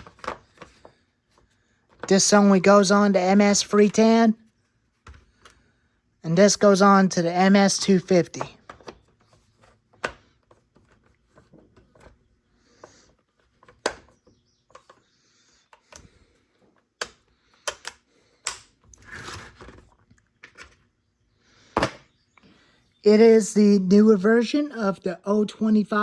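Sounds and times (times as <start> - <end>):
metal parts clicking and knocking: 17.0 - 18.7.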